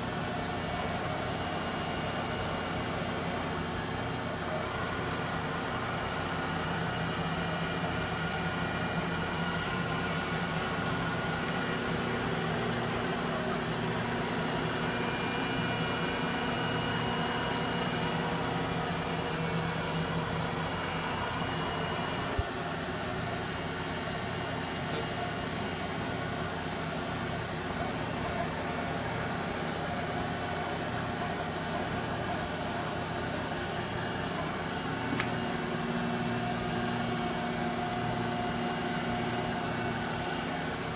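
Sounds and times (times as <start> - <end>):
lathe machine hum: 0.0 - 27.7, 28.5 - 40.9.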